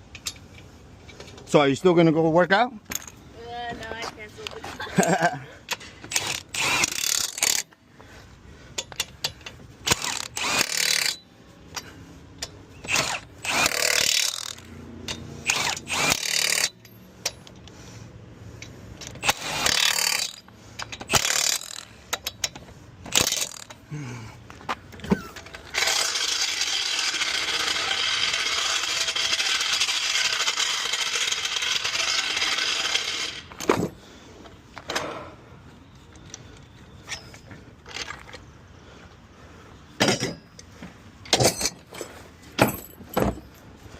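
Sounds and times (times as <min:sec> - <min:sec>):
impact wrench bursts: 0:06.0 - 0:07.7, 0:08.9 - 0:17.7, 0:18.6 - 0:23.8, 0:25.0 - 0:33.9.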